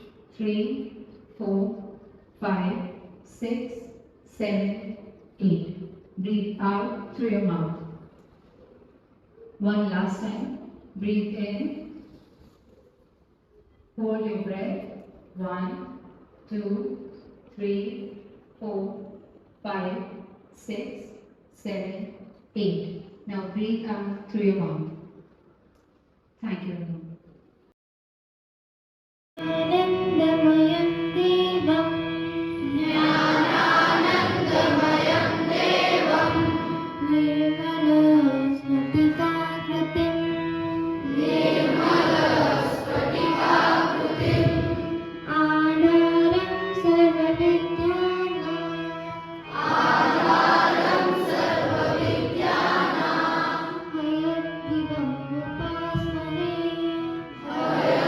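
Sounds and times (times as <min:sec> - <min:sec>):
instrumental backing music: 0:29.4 - 0:58.0
group of voices singing: 0:32.7 - 0:36.8, 0:41.2 - 0:44.6, 0:49.5 - 0:53.9, 0:57.4 - 0:58.0.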